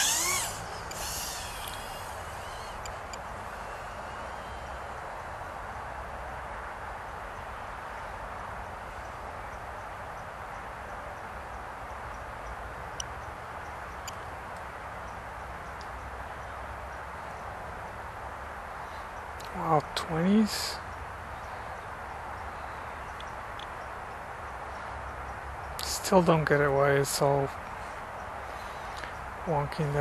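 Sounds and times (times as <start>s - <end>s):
faint clicks: 0.0s - 4.8s, 12.4s - 14.7s, 15.6s - 16.0s.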